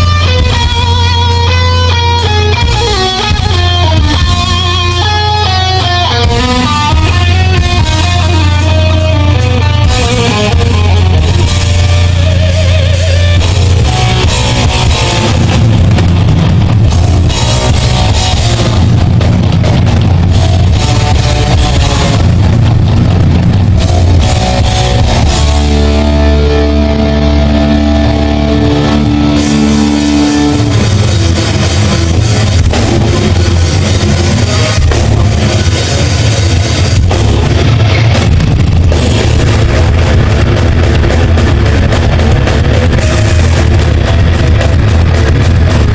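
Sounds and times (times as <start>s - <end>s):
rock band playing: 0.0s - 45.9s
guitar chord ringing: 24.2s - 36.6s.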